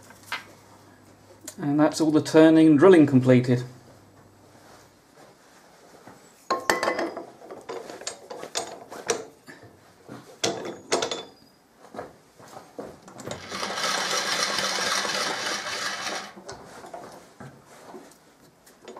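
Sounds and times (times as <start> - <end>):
metal tools clattering: 10.4 - 11.5.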